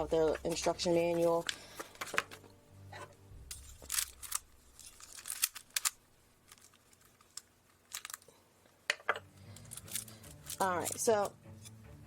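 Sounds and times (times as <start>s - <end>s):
plastic cube twisting clicks: 3.8s - 8.2s.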